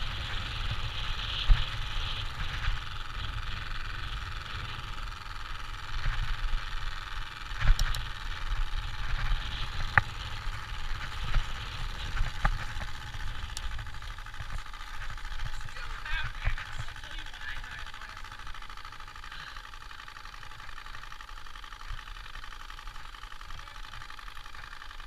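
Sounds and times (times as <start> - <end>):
card rattling in bicycle spokes: 0.0 - 25.0
sharp clicks: 7.5 - 8.2, 11.0 - 18.9.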